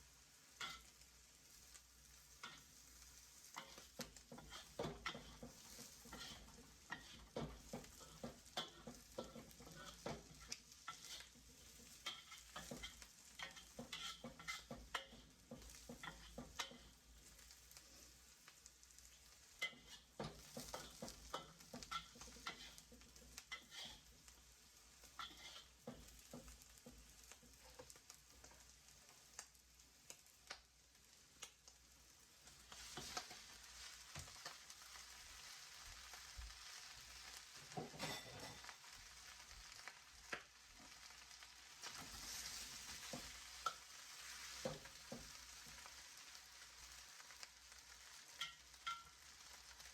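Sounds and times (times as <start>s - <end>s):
vegetables sizzling in a pan: 0.0s - 49.9s
utensil scraping and tapping pan: 0.6s - 1.0s, 2.4s - 2.8s, 3.5s - 18.1s, 19.5s - 24.4s, 25.0s - 29.5s, 32.4s - 35.0s, 37.6s - 38.8s, 41.8s - 45.9s, 48.3s - 49.8s.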